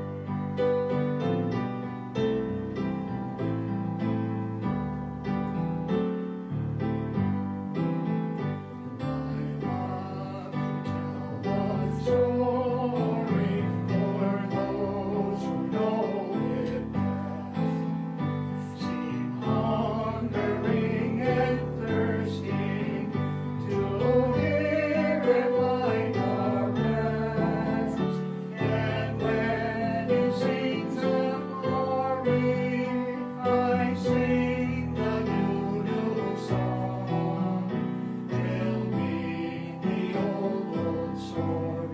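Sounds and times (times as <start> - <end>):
hymn singing with accompaniment: 8.8 - 41.9.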